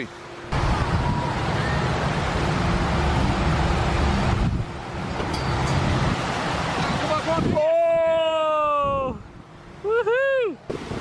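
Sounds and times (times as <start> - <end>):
strong wind buffeting microphone: 0.5 - 8.1, 8.7 - 9.5.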